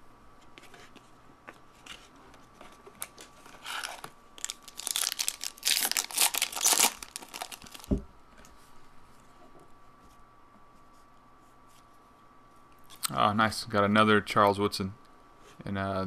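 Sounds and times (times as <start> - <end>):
wrapper tearing and crinkling: 3.0 - 7.9.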